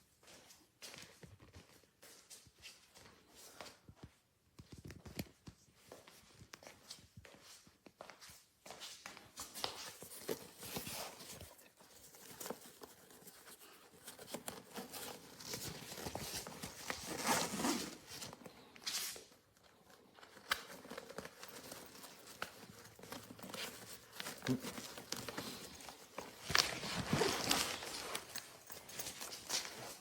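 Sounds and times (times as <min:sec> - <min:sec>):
backpack fabric rustling and scraping: 0:09.5 - 0:30.0.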